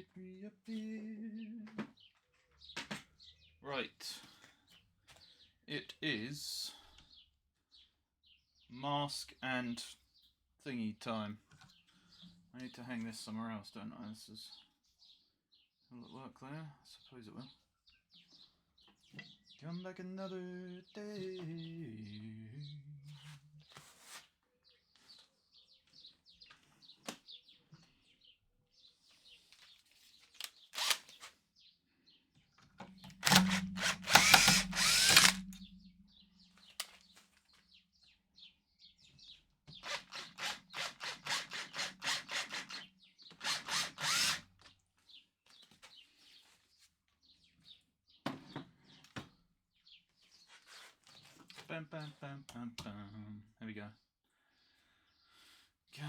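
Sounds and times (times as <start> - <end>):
electric power tool bursts: 33.0 - 35.8, 43.4 - 44.4.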